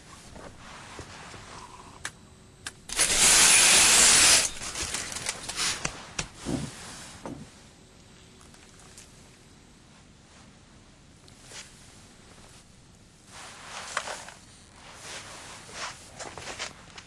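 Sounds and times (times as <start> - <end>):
loud hiss: 2.9 - 5.8.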